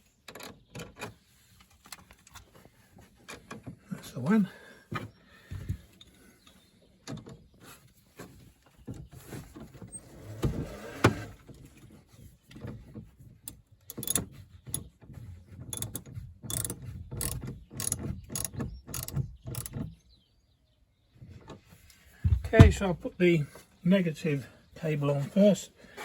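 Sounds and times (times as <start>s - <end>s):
socket ratchet clicking: 13.9s - 14.2s, 15.7s - 19.8s
knocks: 22.2s - 22.9s.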